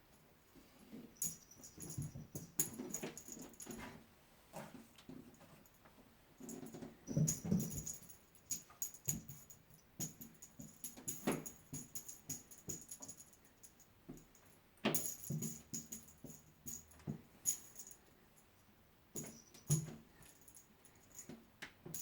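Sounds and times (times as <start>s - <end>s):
small metal bell jingling: 1.2s - 3.9s, 6.4s - 18.0s, 19.1s - 21.3s.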